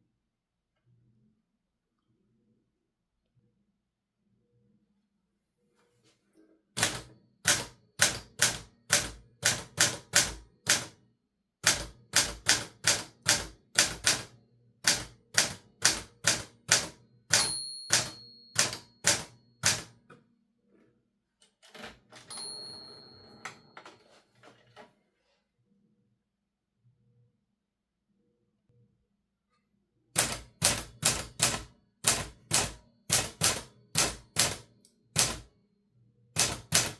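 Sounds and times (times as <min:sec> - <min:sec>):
typewriter keystrokes: 0:06.8 - 0:11.0, 0:11.6 - 0:20.0, 0:30.2 - 0:35.5, 0:36.4 - 0:36.9
typewriter margin bell: 0:14.9 - 0:19.9, 0:22.1 - 0:24.4, 0:30.2 - 0:35.4.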